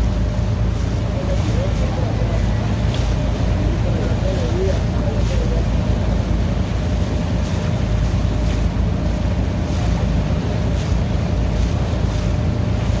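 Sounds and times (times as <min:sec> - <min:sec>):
boat motor rumble: 0:00.0 - 0:13.0.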